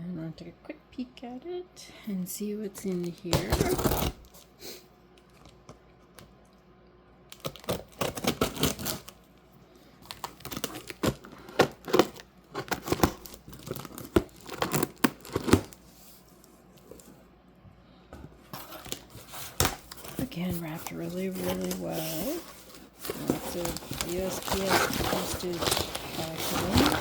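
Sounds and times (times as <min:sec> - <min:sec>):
packing material ripping and rustling: 0:02.9 - 0:04.5, 0:07.3 - 0:09.2, 0:10.0 - 0:16.2, 0:18.6 - 0:27.0.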